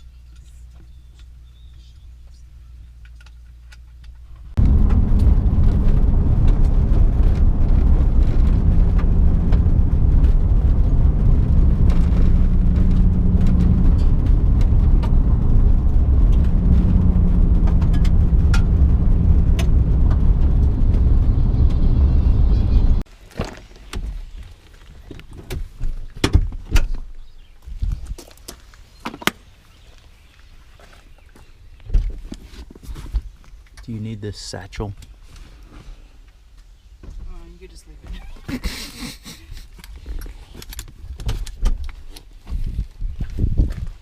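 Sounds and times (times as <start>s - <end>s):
vehicle engine and road noise: 0.0s - 44.0s
faint hum shifting pitch: 4.6s - 23.0s.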